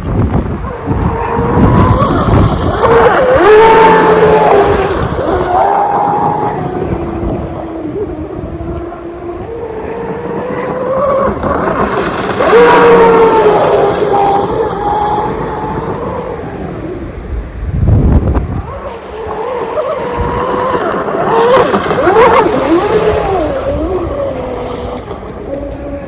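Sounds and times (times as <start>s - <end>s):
wind buffeting microphone: 0.0s - 26.0s
electric motor whining: 0.1s - 17.2s, 18.2s - 26.0s.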